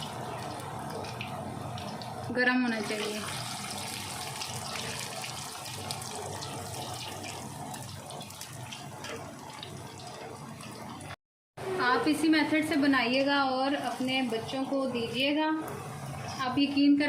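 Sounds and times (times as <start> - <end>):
fries sizzling in hot oil: 0.0 - 11.2, 12.0 - 17.0.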